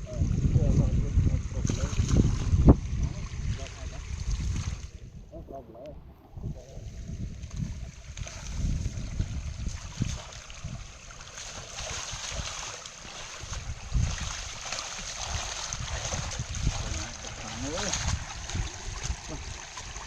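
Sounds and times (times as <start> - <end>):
rushing water: 0.0 - 20.0
wind buffeting microphone: 0.0 - 20.0.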